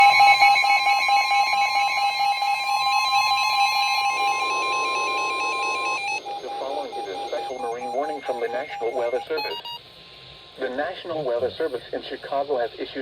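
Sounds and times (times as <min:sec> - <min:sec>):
pulsing electronic alert beep: 0:00.0 - 0:09.8
steady alarm tone: 0:00.0 - 0:09.8
radio static hiss: 0:04.3 - 0:13.0.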